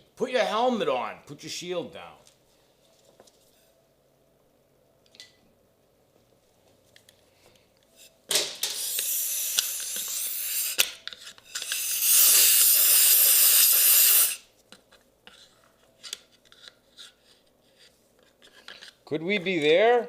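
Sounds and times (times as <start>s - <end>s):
compressed air blow gun hissing: 8.7s - 10.8s, 11.6s - 14.4s.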